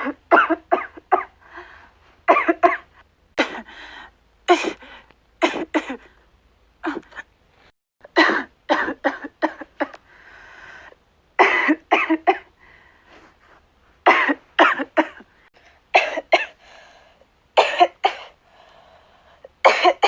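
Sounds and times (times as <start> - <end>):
girl coughing: 0.0 - 1.4, 2.3 - 3.7, 4.5 - 4.8, 5.4 - 6.1, 6.8 - 7.3, 8.1 - 10.0, 11.4 - 12.5, 14.1 - 15.3, 15.9 - 16.6, 17.6 - 18.4, 19.6 - 20.0
breathing: 1.4 - 2.2, 3.7 - 4.2, 4.8 - 5.2, 10.0 - 11.0, 12.6 - 13.6, 16.6 - 17.3, 18.4 - 19.5.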